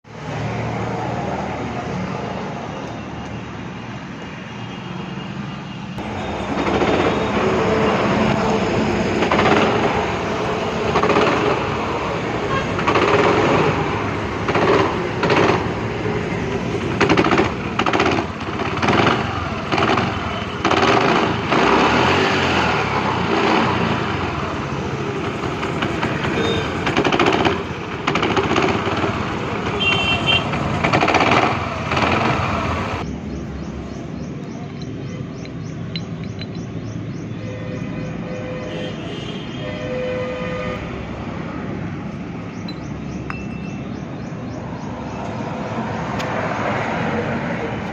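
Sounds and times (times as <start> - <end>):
scooter engine rattling and knocking: 6.0 - 37.3.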